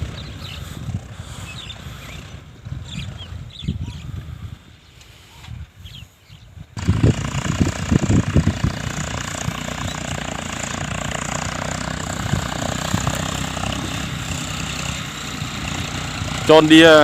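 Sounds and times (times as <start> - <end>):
tractor diesel engine running: 0.0 - 6.0, 6.7 - 17.0.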